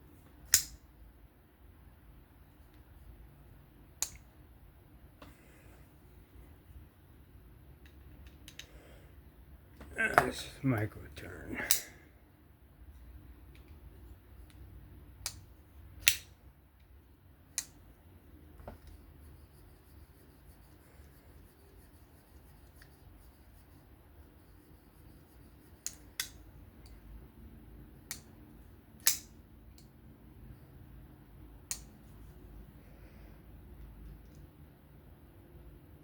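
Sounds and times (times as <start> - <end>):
pocket knife clicking open and shut: 0.5 - 0.8, 16.0 - 16.3, 29.0 - 29.9.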